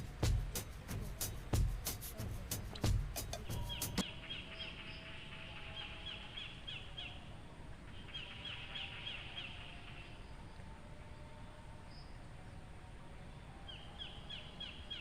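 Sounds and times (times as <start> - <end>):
bird chirping: 0.0 - 12.3
rural outdoor ambience: 0.0 - 15.0.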